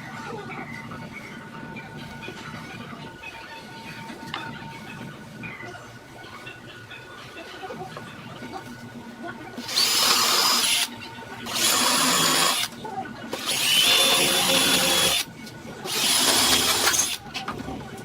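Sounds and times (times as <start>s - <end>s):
angle grinder whining: 9.6s - 12.7s, 13.3s - 15.3s, 15.9s - 17.2s.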